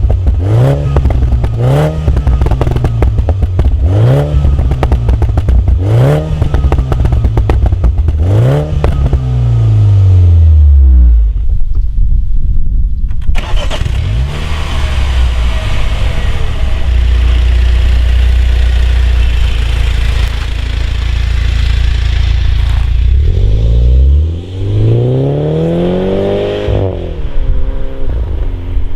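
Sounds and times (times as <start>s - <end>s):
exhaust crackles and pops: 0.0s - 9.7s, 14.8s - 23.8s
car engine revving: 0.0s - 11.2s, 13.4s - 28.9s.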